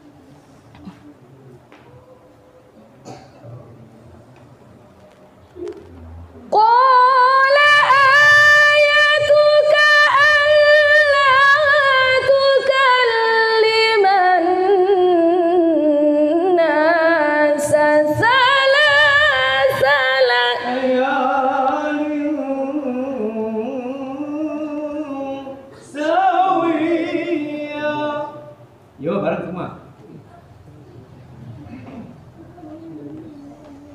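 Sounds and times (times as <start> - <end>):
person reciting in high voice: 32.4 - 33.9.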